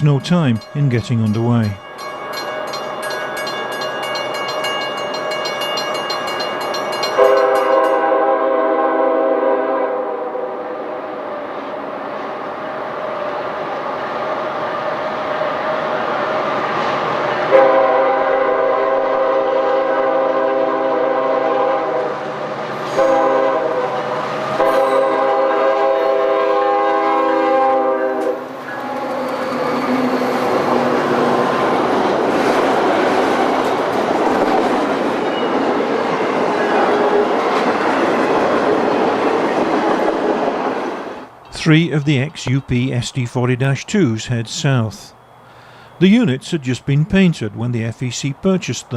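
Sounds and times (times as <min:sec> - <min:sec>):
train rumbling past: 0:00.0 - 0:41.5
locomotive air horn blasts: 0:07.2 - 0:10.6, 0:17.5 - 0:22.2, 0:22.9 - 0:28.4.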